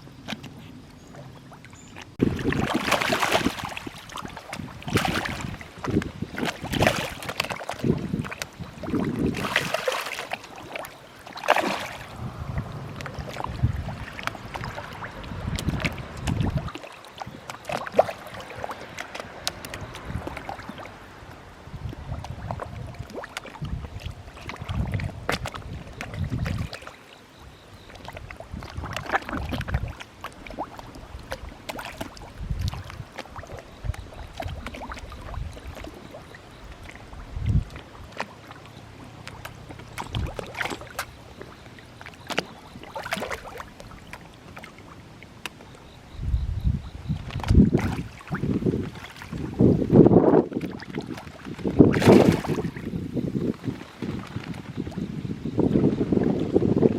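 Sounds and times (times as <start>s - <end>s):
fish splashing at water surface: 2.2s - 21.3s, 27.9s - 45.6s, 47.1s - 49.6s, 50.5s - 52.9s.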